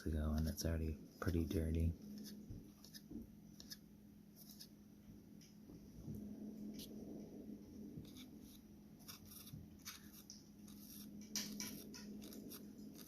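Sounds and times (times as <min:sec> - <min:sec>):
toothbrush scrubbing fan blades: 0:00.0 - 0:03.8, 0:07.9 - 0:13.0
low steady hum: 0:00.0 - 0:13.0.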